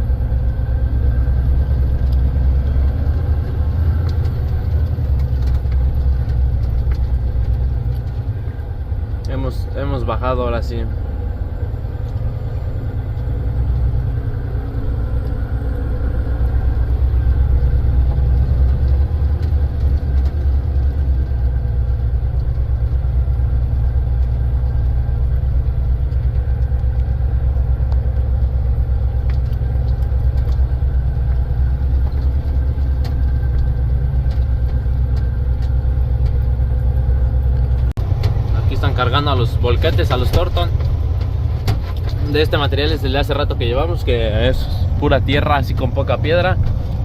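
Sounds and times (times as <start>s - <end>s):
diesel truck engine droning: 0.0s - 47.0s.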